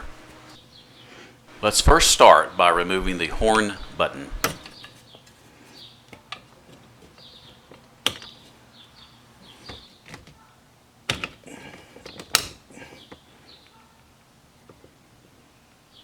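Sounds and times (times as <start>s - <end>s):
horn button clicks: 2.8s - 4.7s.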